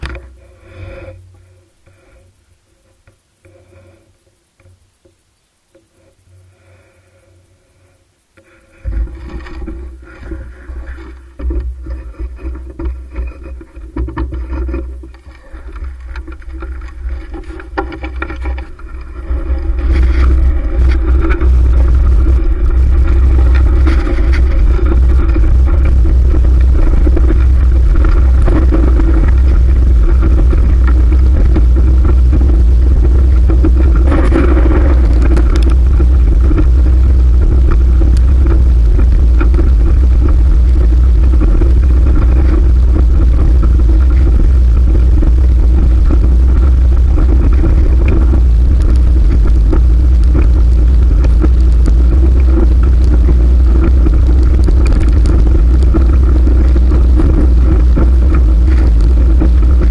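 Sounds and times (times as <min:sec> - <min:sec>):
road noise: 0:14.4 - 0:59.9
wind buffeting microphone: 0:18.8 - 0:59.9.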